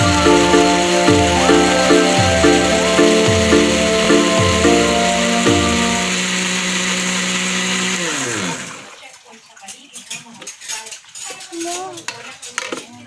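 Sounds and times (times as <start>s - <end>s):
blender motor running: 0.0s - 9.0s.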